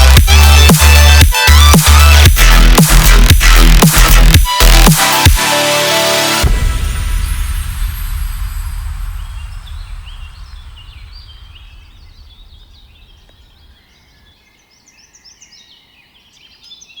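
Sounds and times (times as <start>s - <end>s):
electronic background music: 0.0s - 13.7s
small birds chirping: 9.2s - 17.0s.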